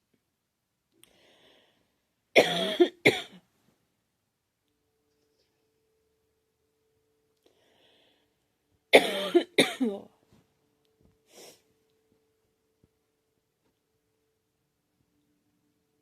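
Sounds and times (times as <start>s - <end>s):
faint breath: 1.0s - 2.1s, 7.4s - 8.5s, 11.2s - 11.8s
girl coughing: 2.4s - 3.4s, 8.9s - 10.0s.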